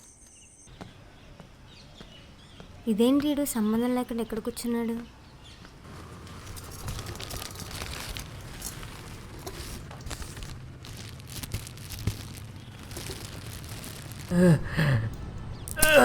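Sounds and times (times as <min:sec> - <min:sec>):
soft rustling and crinkling: 0:05.0 - 0:16.0
low background rumble: 0:05.4 - 0:16.0.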